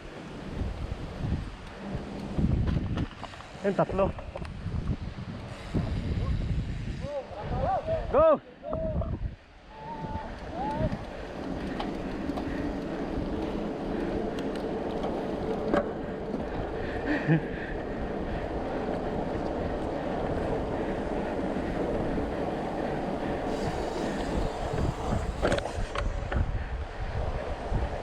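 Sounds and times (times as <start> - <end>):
wind rushing on microphone: 0.0 - 28.0.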